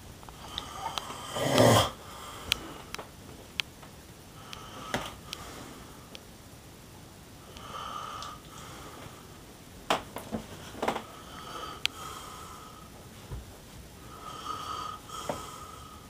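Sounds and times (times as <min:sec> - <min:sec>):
man snoring: 0:00.5 - 0:02.0.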